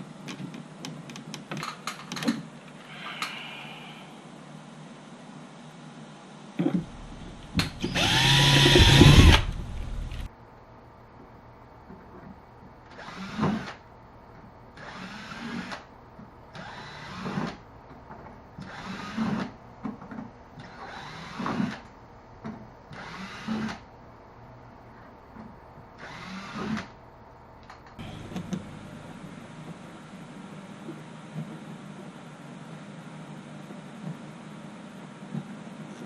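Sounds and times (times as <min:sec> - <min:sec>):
power drill bursts: 0:07.6 - 0:10.3.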